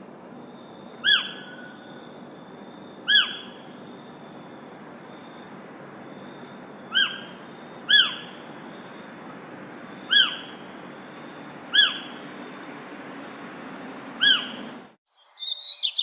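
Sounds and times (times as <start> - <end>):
bird calling: 0.4 - 16.0.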